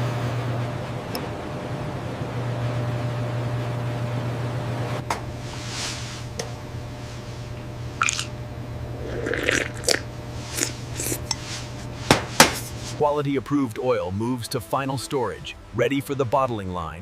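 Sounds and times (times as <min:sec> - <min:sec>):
steady low hum: 0:00.0 - 0:13.5.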